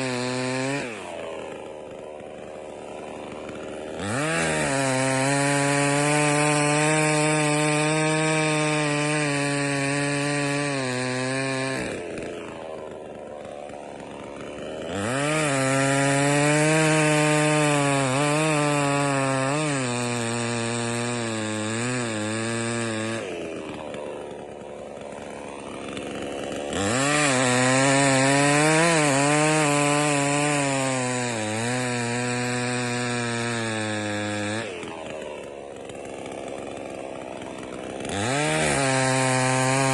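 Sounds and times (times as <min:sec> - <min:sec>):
chainsaw revving and idling: 0:00.0 - 0:39.9.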